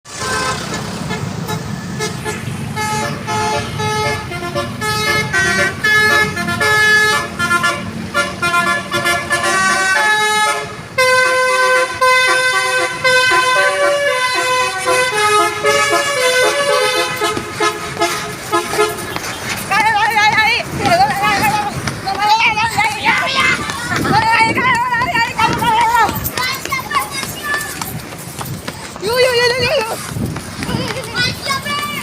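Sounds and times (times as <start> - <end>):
musical air horn melody: 0.1 - 19.2.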